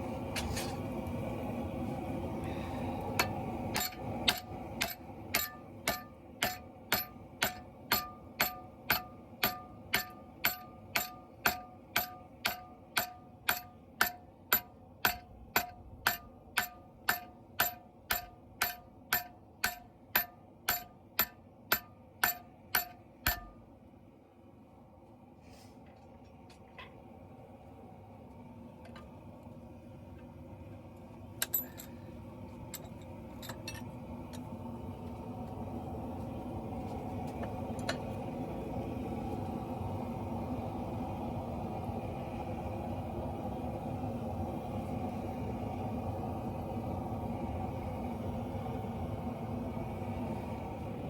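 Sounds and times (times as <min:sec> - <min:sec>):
hammer ringing on an anvil: 0:03.2 - 0:23.6.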